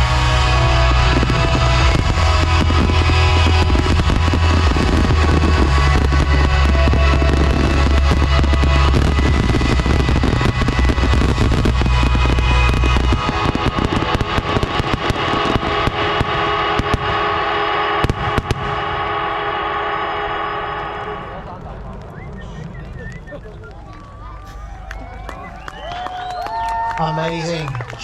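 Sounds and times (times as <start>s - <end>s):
fireworks crackling and banging: 0.0s - 28.0s.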